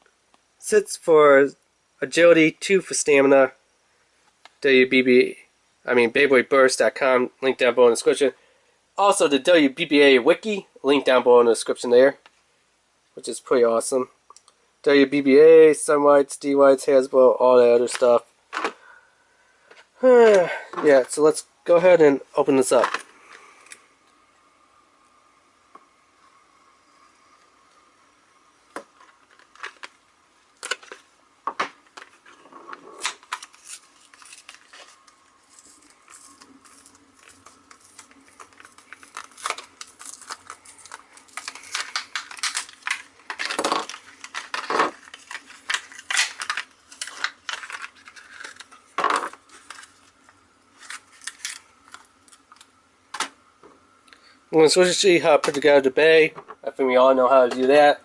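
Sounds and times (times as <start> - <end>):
packaging being opened: 28.8 - 31.1, 31.7 - 53.3.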